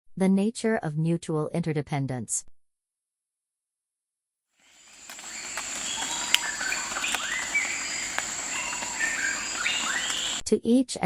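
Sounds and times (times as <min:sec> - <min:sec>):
birds whistling: 0:04.6 - 0:10.4
insect drone: 0:04.6 - 0:10.4.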